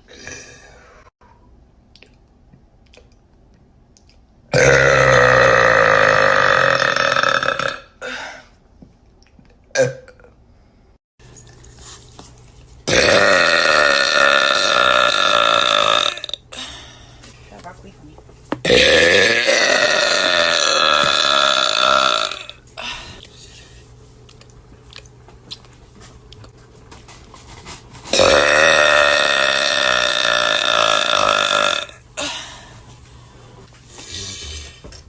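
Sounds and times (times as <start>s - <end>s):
woman burping: 4.5s - 8.4s, 9.7s - 10.4s, 12.9s - 16.5s, 18.6s - 22.9s, 28.2s - 32.4s.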